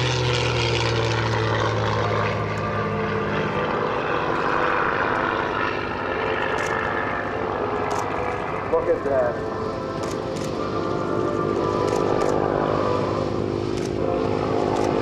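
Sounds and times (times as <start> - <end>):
propeller plane flying past: 0.0 - 15.0
rushing noise: 9.4 - 15.0.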